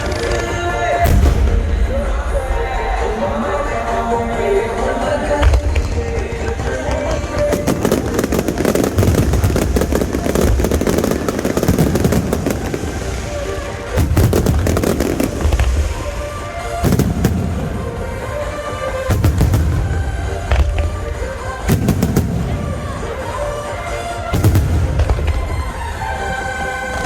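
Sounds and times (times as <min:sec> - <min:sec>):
background music: 0:00.0 - 0:27.0
deep fireworks booms: 0:00.0 - 0:27.0
fireworks crackling bursts: 0:00.0 - 0:27.0.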